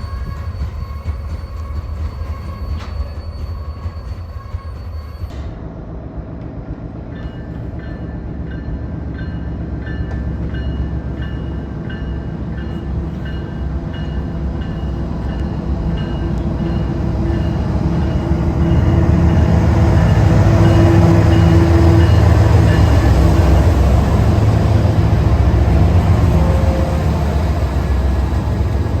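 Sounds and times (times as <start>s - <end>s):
train rumbling on rails: 0.0s - 29.0s.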